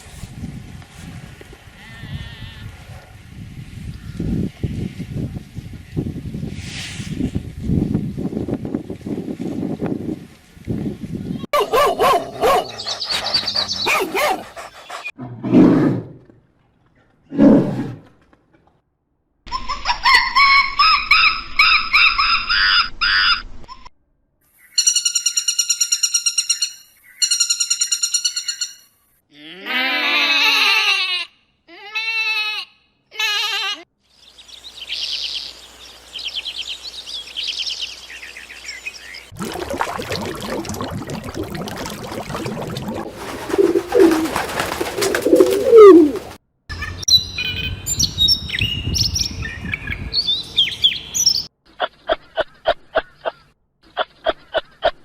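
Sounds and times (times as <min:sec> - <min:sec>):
chirps: 0:12.6 - 0:15.1
animal calls: 0:43.1 - 0:46.4.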